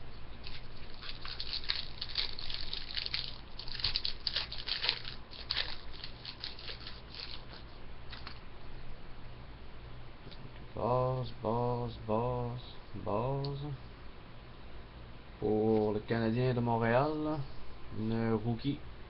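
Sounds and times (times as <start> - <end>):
cards and foil wrappers crinkling: 0.4 - 8.4.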